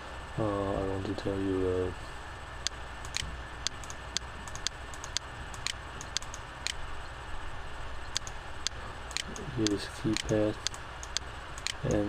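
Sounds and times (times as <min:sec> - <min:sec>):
low background hiss: 0:00.0 - 0:12.0
faint irregular clicks: 0:02.6 - 0:06.9, 0:08.0 - 0:12.0
regular ticking: 0:02.6 - 0:07.0, 0:08.0 - 0:12.0.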